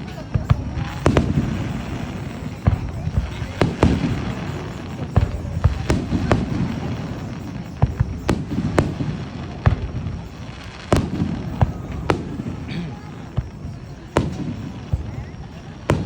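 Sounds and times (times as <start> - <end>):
fireworks bangs: 0.0 - 16.0.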